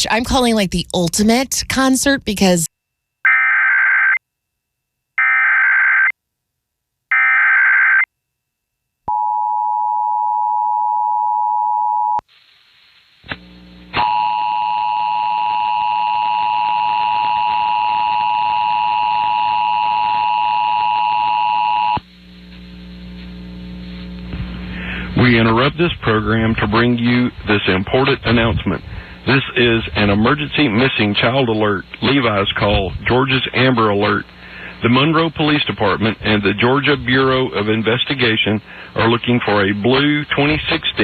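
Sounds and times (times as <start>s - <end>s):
hiss and hum: 22.0s - 41.0s.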